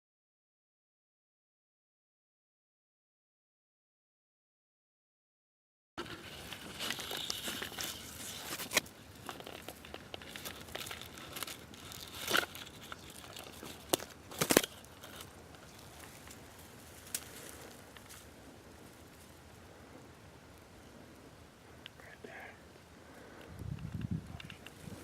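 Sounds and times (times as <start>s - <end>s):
close rustling and crinkling: 6.0s - 19.5s.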